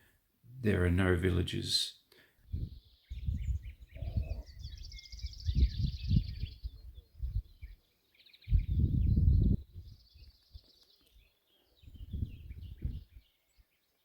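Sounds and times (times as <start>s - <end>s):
small birds singing: 0.0s - 14.0s
wind buffeting microphone: 2.4s - 7.8s, 8.4s - 10.6s, 11.8s - 13.3s.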